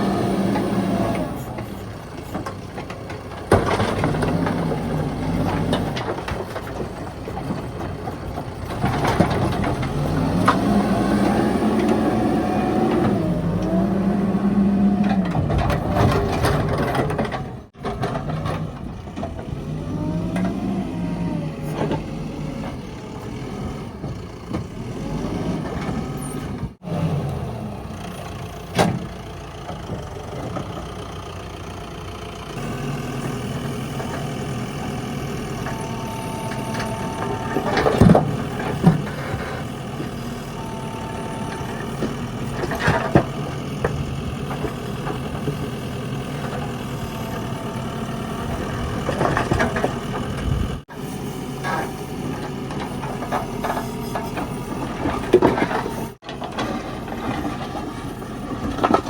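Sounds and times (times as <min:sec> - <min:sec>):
diesel engine revving: 0:00.0 - 0:59.0.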